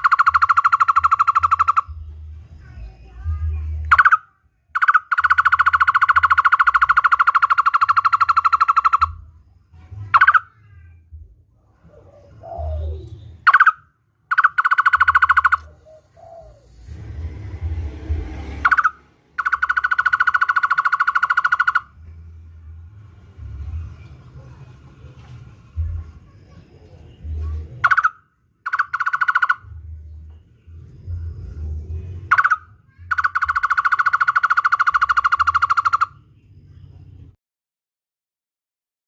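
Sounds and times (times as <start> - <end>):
barbet calling in rapid trills: 0.0 - 9.4, 10.0 - 10.6, 12.0 - 16.8, 18.6 - 22.0, 26.5 - 30.2, 30.9 - 36.3.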